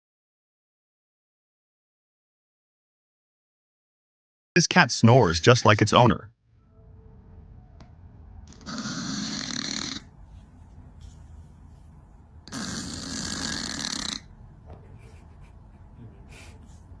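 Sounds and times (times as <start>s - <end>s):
harsh snoring: 8.5s - 10.1s, 12.5s - 14.3s.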